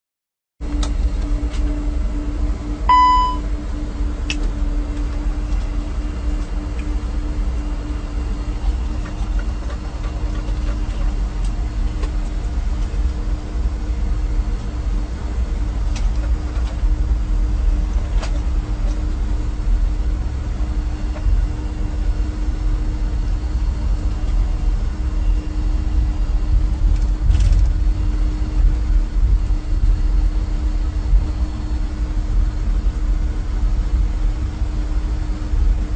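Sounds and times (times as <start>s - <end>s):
constant hum: 0.6s - 35.9s
engine and airflow rumble: 0.6s - 35.9s
short electronic beep: 2.9s - 3.4s.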